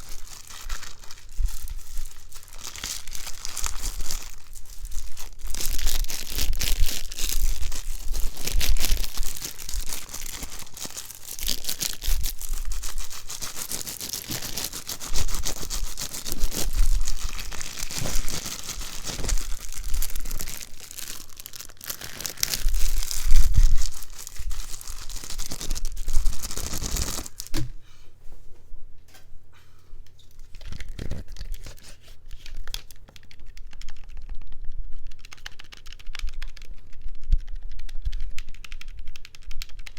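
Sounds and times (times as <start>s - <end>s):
crinkly material crumpling: 0.0s - 27.6s, 30.3s - 38.5s.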